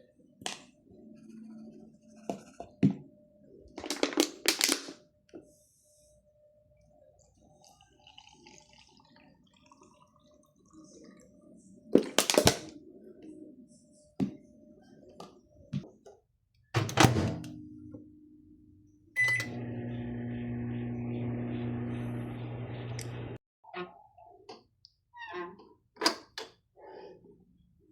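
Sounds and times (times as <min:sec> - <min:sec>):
microwave oven humming: 0:19.2 - 0:23.4.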